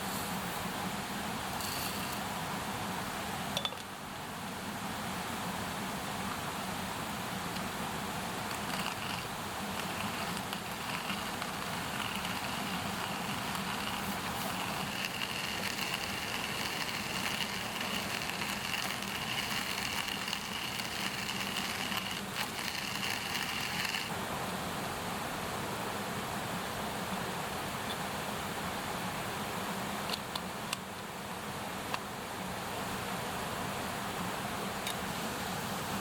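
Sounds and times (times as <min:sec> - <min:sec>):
steady high whine: 0:06.7 - 0:24.2
wood bonfire crackling: 0:08.4 - 0:24.1
sausages sizzling: 0:08.6 - 0:24.1.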